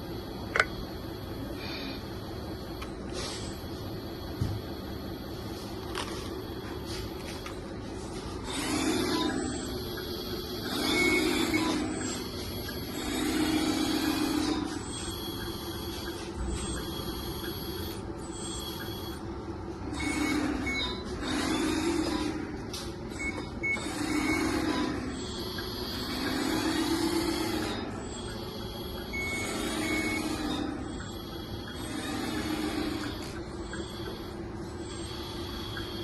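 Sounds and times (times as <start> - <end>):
electronic reversing beeps: 2.5 - 36.0
toy loader motors whirring: 8.4 - 19.1, 19.9 - 36.0.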